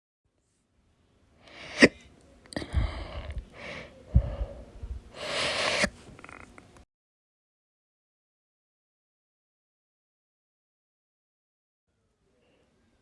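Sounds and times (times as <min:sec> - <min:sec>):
gasping breaths: 0:02.6 - 0:06.4.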